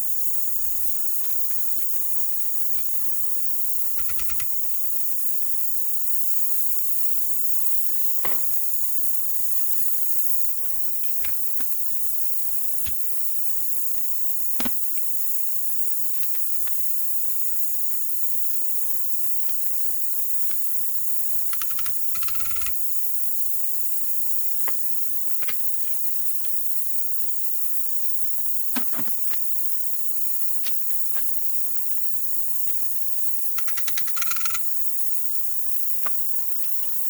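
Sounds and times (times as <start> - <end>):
sharp clicks and taps: 4.0 - 4.5.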